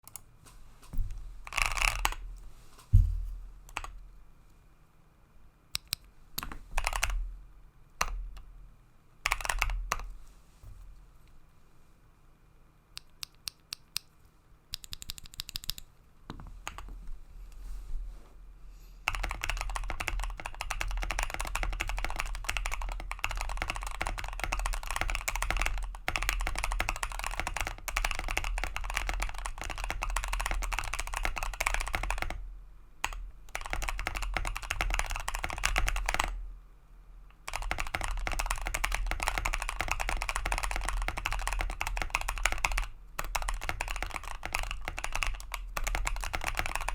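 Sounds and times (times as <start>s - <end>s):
mechanical keyboard typing: 1.5s - 2.2s, 5.8s - 7.2s, 9.3s - 10.1s, 14.7s - 15.8s, 16.6s - 16.9s, 19.1s - 32.4s, 33.0s - 36.4s, 37.4s - 46.9s.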